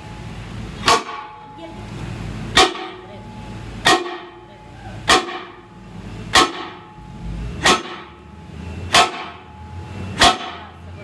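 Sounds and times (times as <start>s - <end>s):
hammer striking steel: 0.8s - 1.7s, 2.5s - 3.1s, 3.8s - 5.7s, 6.3s - 8.2s, 8.8s - 10.8s.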